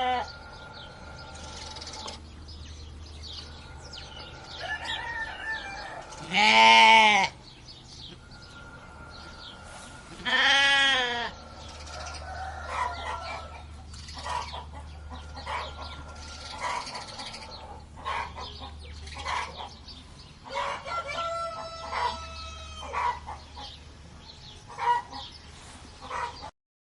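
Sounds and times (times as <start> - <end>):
rooster crowing: 0.0 - 2.1, 3.2 - 7.4, 8.2 - 17.8, 20.5 - 23.3
chickens clucking: 0.0 - 26.5.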